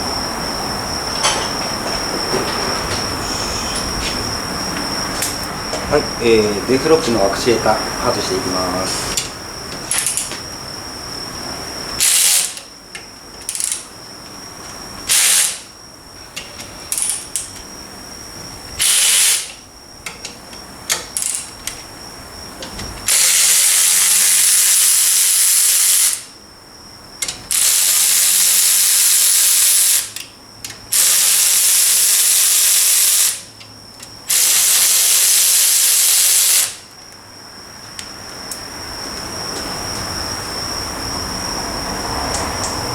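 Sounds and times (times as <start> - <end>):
air ratchet bursts: 12.0 - 12.7, 15.1 - 15.7, 18.8 - 19.6, 23.1 - 26.3, 27.5 - 30.2, 30.9 - 33.5, 34.2 - 36.9.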